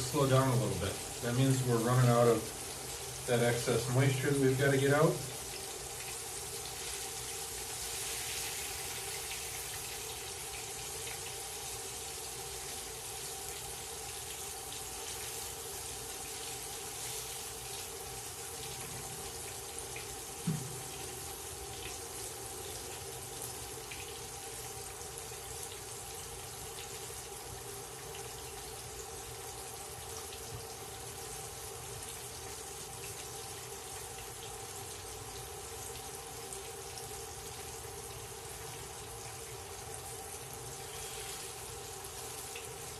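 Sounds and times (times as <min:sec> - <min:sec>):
fish sizzling in oil: 0:00.0 - 0:42.9
short thump: 0:20.4 - 0:20.8.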